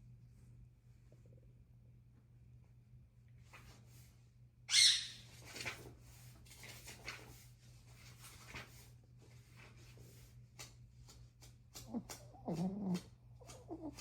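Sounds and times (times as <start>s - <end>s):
dog snoring: 11.9s - 14.0s.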